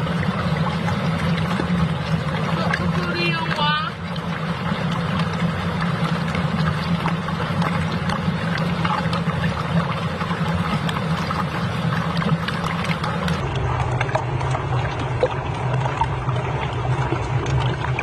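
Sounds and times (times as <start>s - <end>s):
low motor hum: 0.0s - 18.0s
running water: 0.0s - 18.0s.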